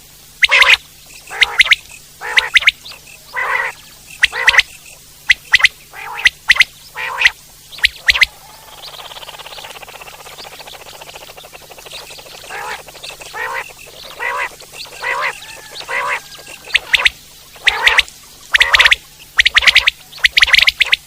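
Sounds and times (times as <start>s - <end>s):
quail nasal notes: 0.4s - 4.7s, 5.3s - 21.0s
quail sharp calls: 0.4s - 4.7s, 5.3s - 21.0s
quail rattling purr: 9.4s - 16.2s.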